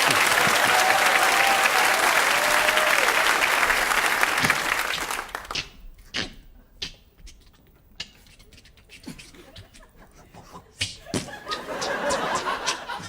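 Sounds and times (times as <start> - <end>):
audience applauding: 0.0 - 5.6.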